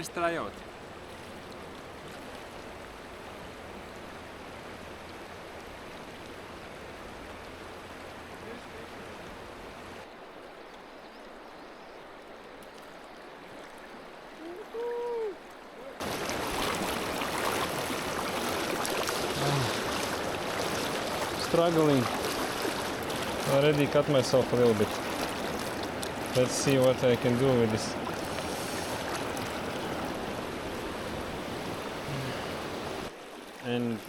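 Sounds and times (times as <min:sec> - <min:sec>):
river water rushing over rocks: 0:12.2 - 0:34.0.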